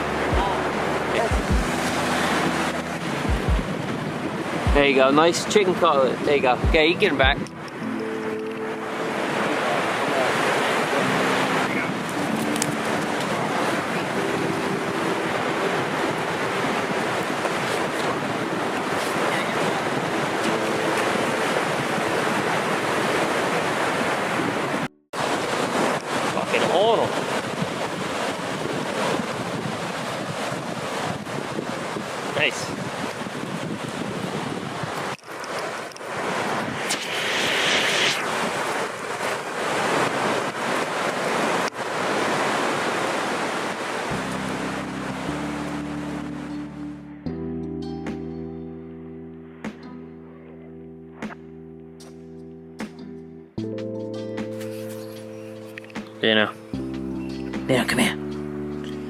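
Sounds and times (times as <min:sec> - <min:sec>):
ocean surf washing onto beach: 0:00.0 - 0:46.8
wind noise on microphone: 0:00.0 - 0:47.1.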